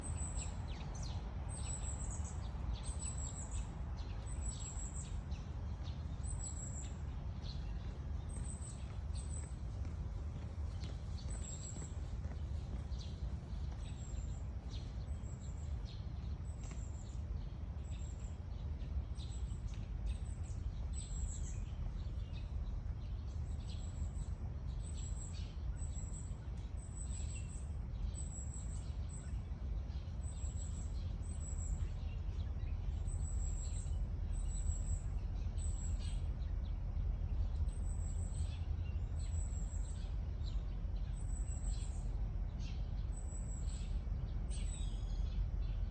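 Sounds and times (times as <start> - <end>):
small birds chirping: 0.0 - 45.9
steady low rumble: 0.0 - 45.9.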